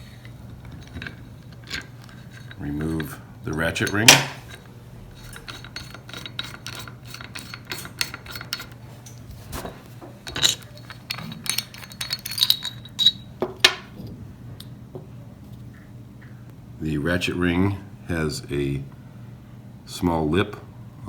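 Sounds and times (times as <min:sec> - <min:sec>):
metal clinks ringing: 0:00.8 - 0:04.5, 0:10.2 - 0:13.8
ratchet clicks: 0:05.2 - 0:08.8.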